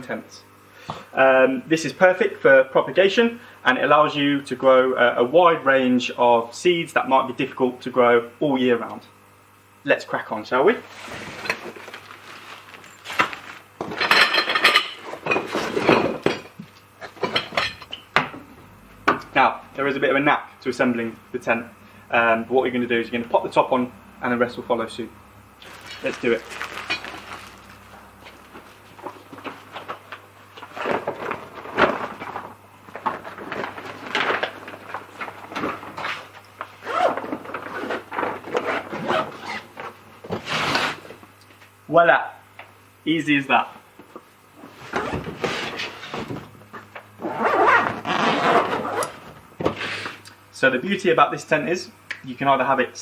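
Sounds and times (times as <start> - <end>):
tent fabric rustling: 10.8 - 13.7, 25.6 - 30.0, 47.3 - 49.1.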